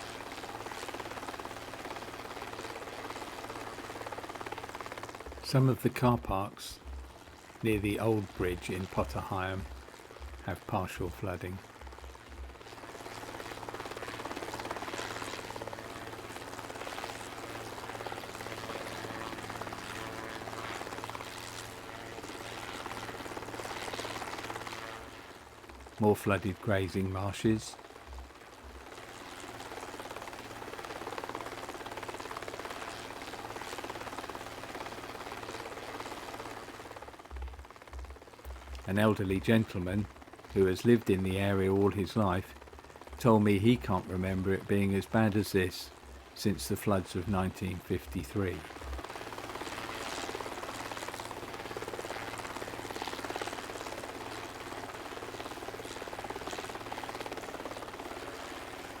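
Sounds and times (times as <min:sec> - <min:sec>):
aircraft rotors chopping: 0:00.0 - 0:59.0.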